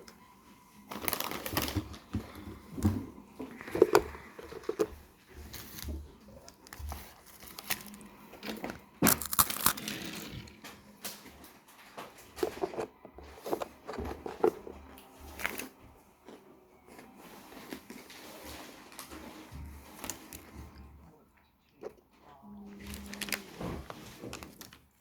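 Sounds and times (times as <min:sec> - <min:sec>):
crunching freeze-dried ice cream: 0:00.8 - 0:11.2, 0:22.7 - 0:25.0.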